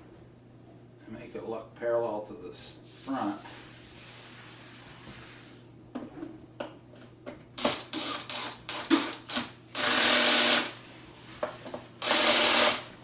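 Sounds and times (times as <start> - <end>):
cordless drill driving screw: 7.6 - 10.8, 12.0 - 12.9.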